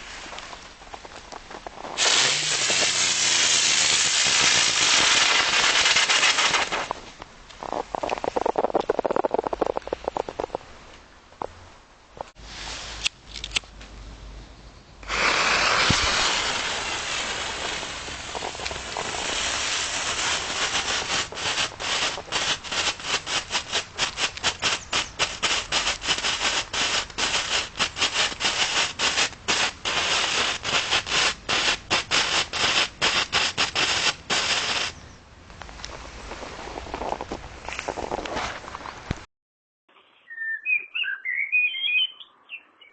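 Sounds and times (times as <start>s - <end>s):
firework crackling pops: 0.0s - 10.6s, 15.0s - 35.0s
firework fountain hissing: 1.8s - 10.5s, 15.0s - 35.0s.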